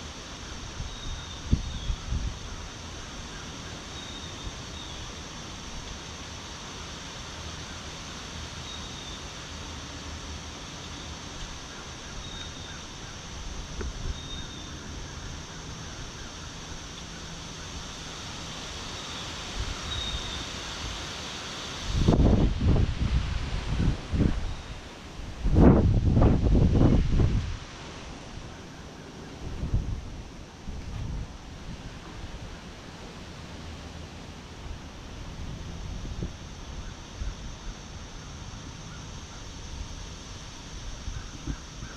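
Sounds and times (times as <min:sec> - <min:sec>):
wind buffeting microphone: 0:21.8 - 0:27.7, 0:29.4 - 0:32.4
wind rushing: 0:25.2 - 0:27.7.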